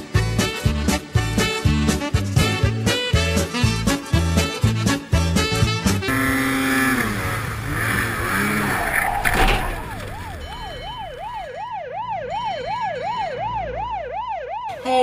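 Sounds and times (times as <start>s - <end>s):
jumble of falling tones: 6.1s - 13.9s
emergency vehicle siren: 7.8s - 15.0s.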